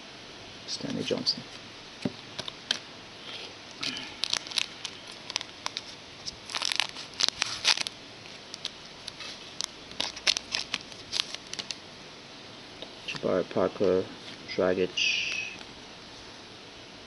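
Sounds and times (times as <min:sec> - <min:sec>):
card crinkling: 0:03.8 - 0:11.8.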